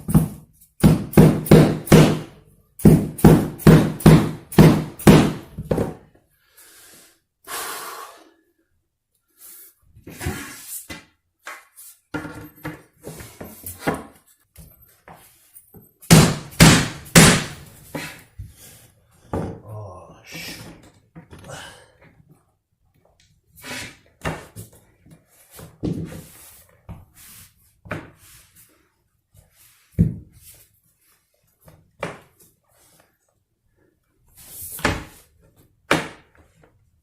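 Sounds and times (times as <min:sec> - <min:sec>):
hammer striking wooden plank: 0:00.1 - 0:05.9, 0:16.1 - 0:17.7.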